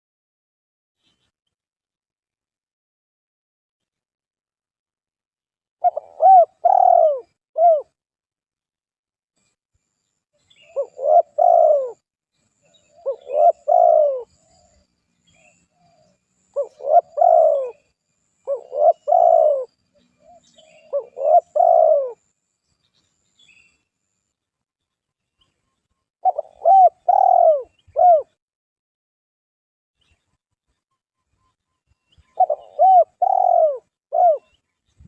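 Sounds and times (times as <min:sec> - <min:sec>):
dove cooing: 0:05.8 - 0:08.0, 0:10.6 - 0:12.0, 0:12.9 - 0:14.8, 0:15.4 - 0:22.2, 0:26.2 - 0:28.4, 0:32.4 - 0:34.6.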